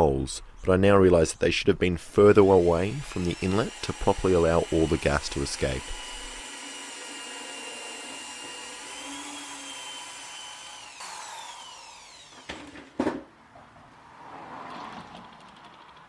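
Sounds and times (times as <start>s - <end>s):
electric drill whining: 2.4s - 12.9s.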